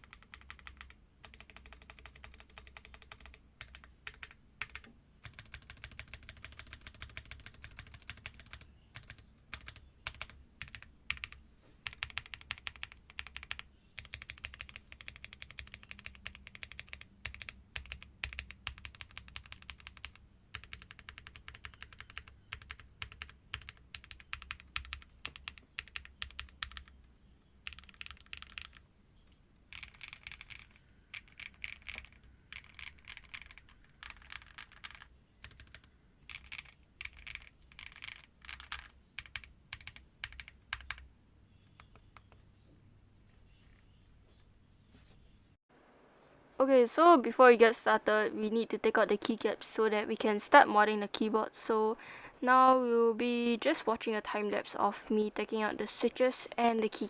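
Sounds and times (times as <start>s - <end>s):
keyboard typing clacks: 0.0s - 27.0s, 27.7s - 28.8s, 29.7s - 41.0s.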